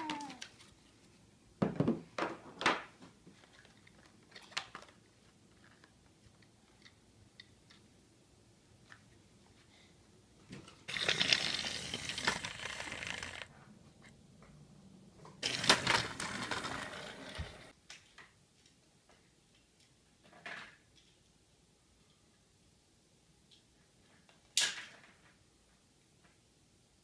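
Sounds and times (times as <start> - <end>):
plastic toy train clattering: 2.6 - 7.8, 10.6 - 13.5, 15.4 - 18.3.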